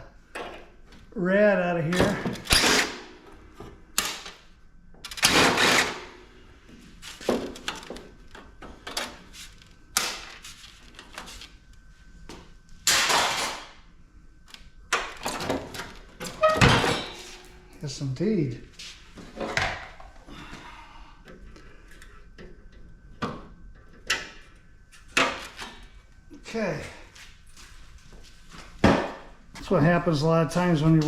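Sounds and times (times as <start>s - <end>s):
metal clanking and scraping: 16.2s - 17.7s.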